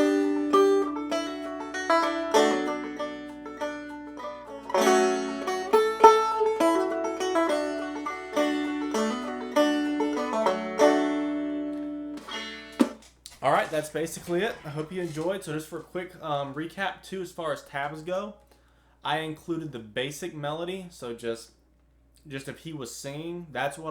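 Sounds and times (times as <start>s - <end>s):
banjo plucked melody and chords: 0.0s - 13.0s.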